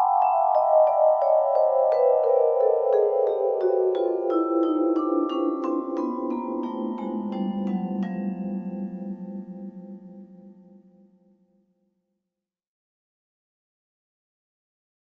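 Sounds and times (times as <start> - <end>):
vibraphone mallet strikes: 0.0 - 11.0.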